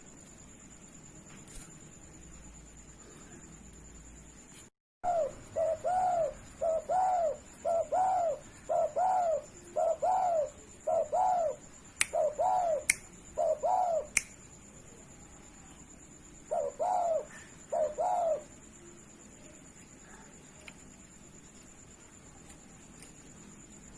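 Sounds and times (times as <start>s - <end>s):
dove cooing: 5.0s - 14.1s, 16.5s - 18.6s
sharp clicks: 14.1s - 14.4s.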